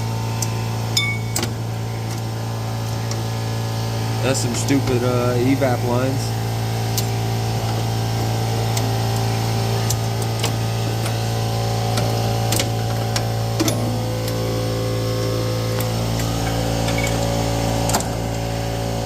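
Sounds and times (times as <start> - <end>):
mechanical hum: 0.0 - 19.0
hand tools tapping on metal: 0.4 - 1.5.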